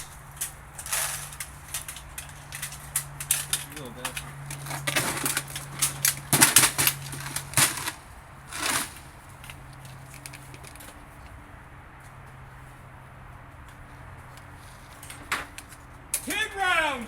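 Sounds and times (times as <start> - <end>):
low steady hum: 0.0 - 0.7
rifle clicks and rattles: 0.0 - 11.4.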